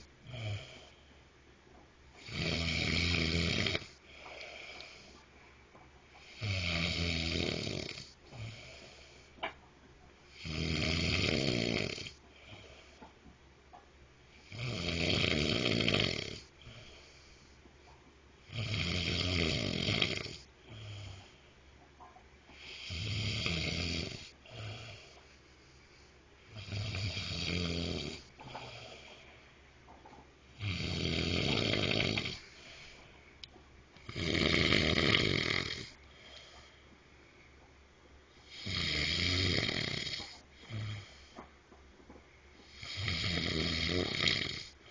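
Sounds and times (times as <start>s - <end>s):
man snoring loudly: 2.2s - 4.0s, 6.3s - 8.7s, 10.3s - 12.2s, 14.4s - 16.5s, 18.5s - 21.2s, 22.6s - 25.1s, 26.5s - 28.9s, 30.6s - 32.4s, 34.0s - 36.0s, 38.5s - 41.1s, 42.7s - 44.8s.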